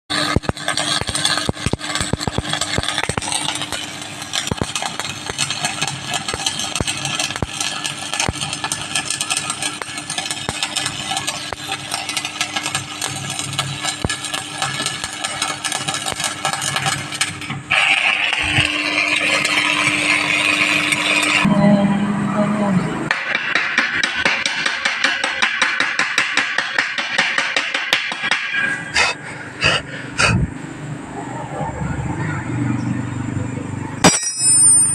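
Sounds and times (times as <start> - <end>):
welding arc crackling: 0.1 - 21.5
welding machine hum: 0.1 - 21.5.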